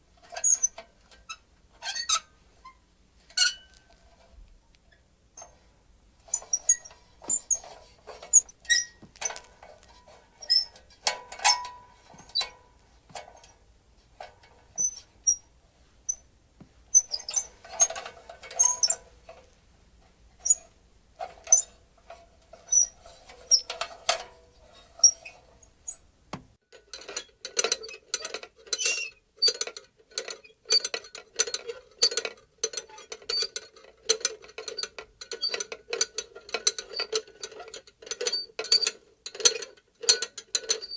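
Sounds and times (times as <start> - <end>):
metal lantern squeaking and clinking: 0.3 - 0.8, 6.2 - 12.6, 14.5 - 15.5, 16.9 - 19.1, 20.4 - 20.7, 22.6 - 26.1.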